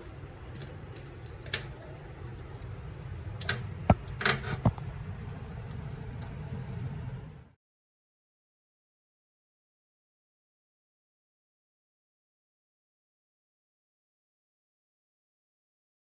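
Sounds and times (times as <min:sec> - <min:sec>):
steady low hum: 0:02.0 - 0:07.5.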